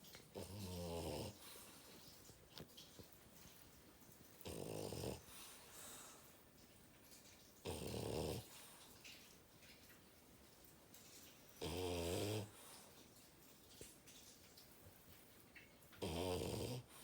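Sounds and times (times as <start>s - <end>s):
dog snoring: 0.3s - 1.8s, 4.4s - 6.1s, 7.6s - 8.6s, 11.6s - 12.6s, 16.0s - 17.0s
dog breathing softly: 0.3s - 3.6s, 4.3s - 6.5s.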